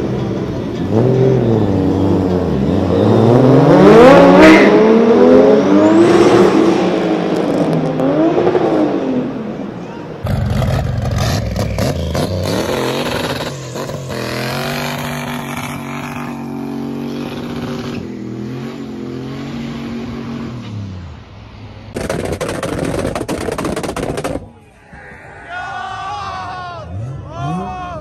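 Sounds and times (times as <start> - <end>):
car engine accelerating: 0.2 - 21.3.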